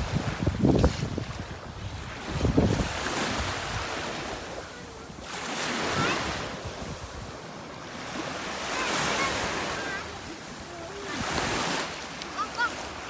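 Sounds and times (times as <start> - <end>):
wind buffeting microphone: 0.0 - 7.7
sea waves washing in: 0.0 - 13.0.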